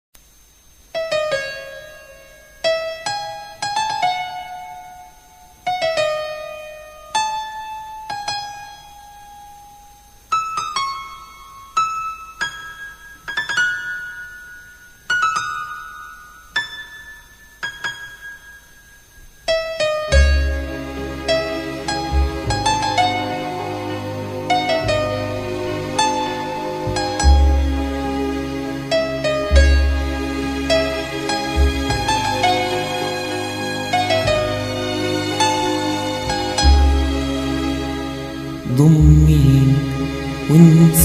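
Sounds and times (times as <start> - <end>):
piano-like keyboard notes: 19.5 - 41.0
full arrangement with deep bass: 38.7 - 41.0.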